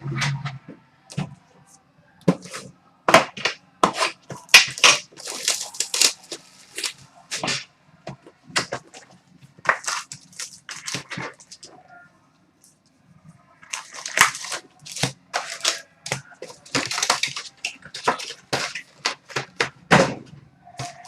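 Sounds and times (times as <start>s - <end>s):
plastic wrappers crinkling and ripping: 3.4s - 7.7s, 8.6s - 11.8s, 13.6s - 19.8s.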